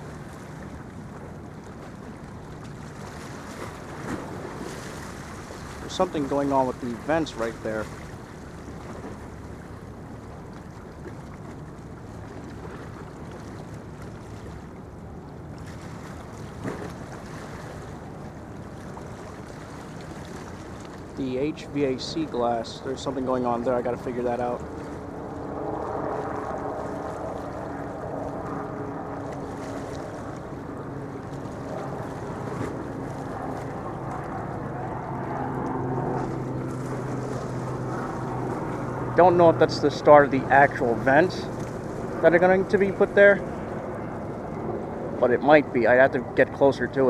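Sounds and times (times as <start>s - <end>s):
low rumbling background noise: 20.9s - 47.0s
faint hum: 21.0s - 47.0s
vehicle ride rumble: 34.3s - 44.3s.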